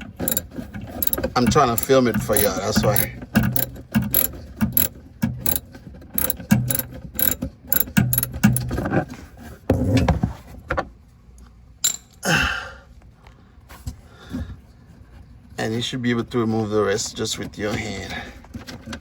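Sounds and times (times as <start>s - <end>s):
hand ratchet clicking: 0.2s - 8.8s.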